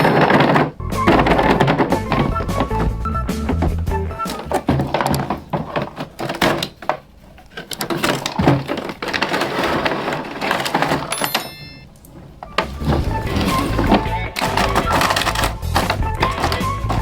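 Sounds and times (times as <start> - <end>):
plastic toy pieces clicking: 3.6 - 17.0
high ringing tone: 11.2 - 11.9.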